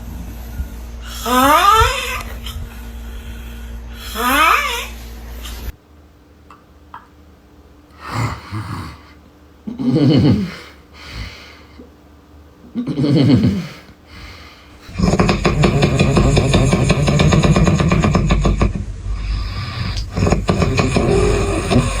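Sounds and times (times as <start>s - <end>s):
quiet breathing: 0.0s - 1.4s, 2.3s - 5.8s, 7.9s - 9.4s, 10.3s - 12.0s, 13.4s - 16.5s, 18.9s - 22.0s
person snoring: 7.9s - 11.6s, 12.8s - 18.4s, 19.2s - 22.0s.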